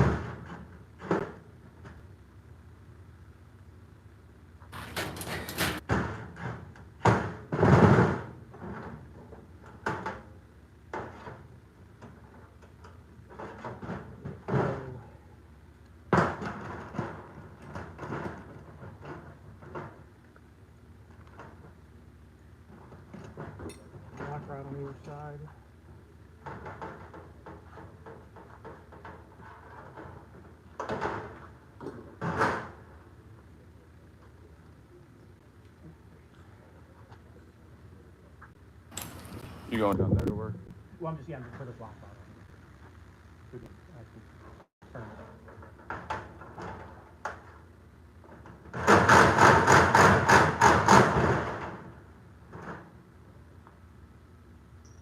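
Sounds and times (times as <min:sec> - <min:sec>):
metal scraping rattles: 0:04.7 - 0:10.2
metallic bangs on garage door: 0:04.8 - 0:08.4, 0:48.7 - 0:52.0.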